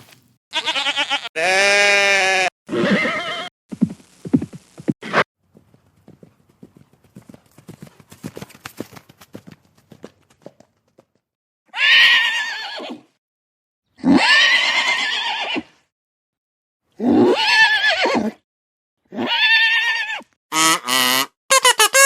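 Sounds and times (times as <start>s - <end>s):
horse whinnying: 0.6s - 3.5s, 11.7s - 13.1s, 14.0s - 15.7s, 17.0s - 18.4s, 19.1s - 20.3s.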